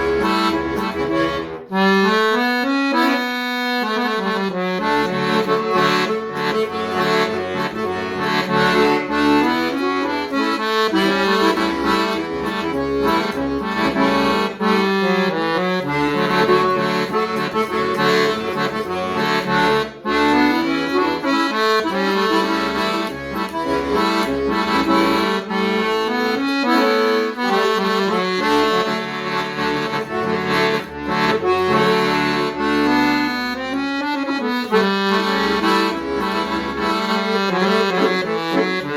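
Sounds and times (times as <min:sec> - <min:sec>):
solo instrumental music: 0:00.0 - 0:38.9.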